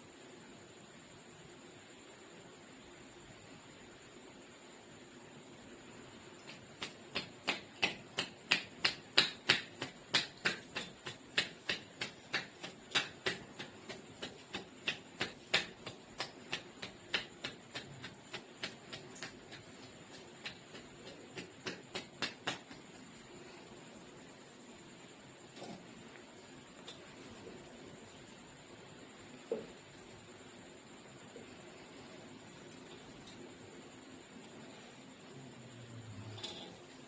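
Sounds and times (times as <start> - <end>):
hands slapping on head: 6.4 - 23.3.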